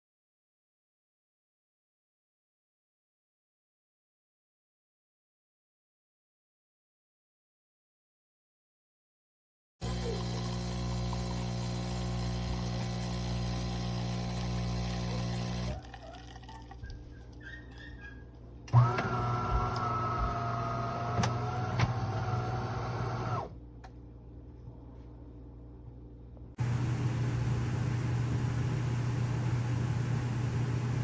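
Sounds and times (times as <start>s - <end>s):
espresso machine motor hum: 9.8s - 15.8s, 18.7s - 23.5s, 26.6s - 31.0s.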